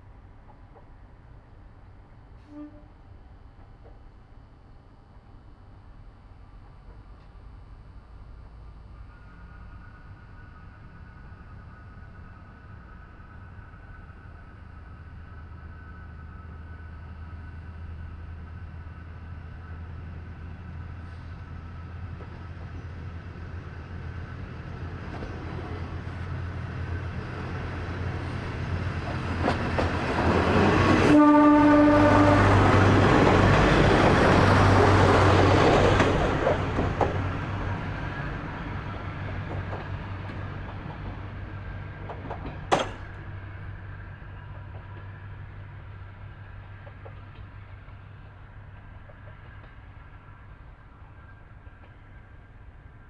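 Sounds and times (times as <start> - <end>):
train horn blast: 2.4 - 3.1, 30.5 - 33.6
diesel railcar passing: 8.2 - 53.0.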